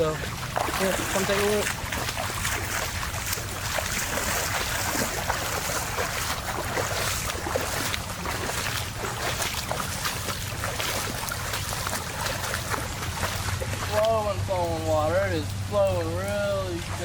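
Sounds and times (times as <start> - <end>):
boots wading through water: 0.0 - 17.0
floodwater running: 0.0 - 17.0.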